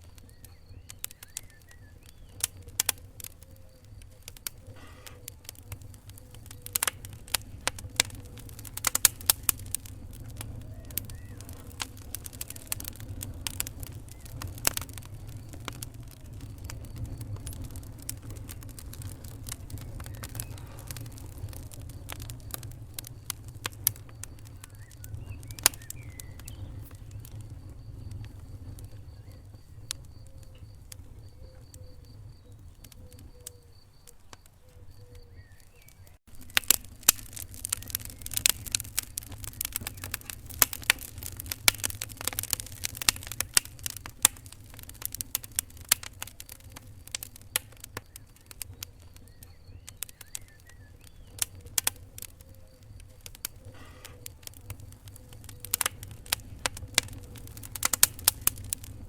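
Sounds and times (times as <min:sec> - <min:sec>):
wood fire crackling and popping: 0:00.0 - 0:59.0
low steady rumble: 0:03.9 - 0:32.7.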